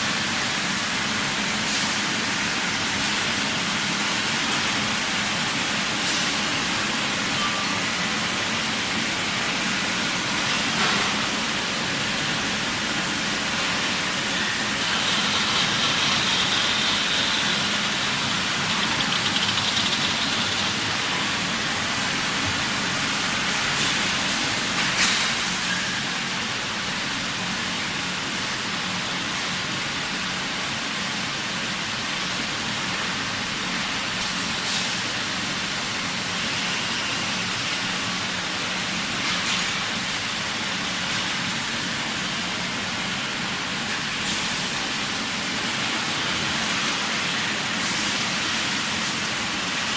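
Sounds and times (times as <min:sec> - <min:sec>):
machine hiss: 0:07.9 - 0:26.2.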